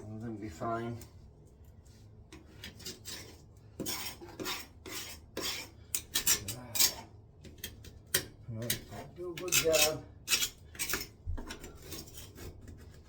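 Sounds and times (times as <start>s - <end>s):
scraping toilet flange: 2.3s - 13.0s.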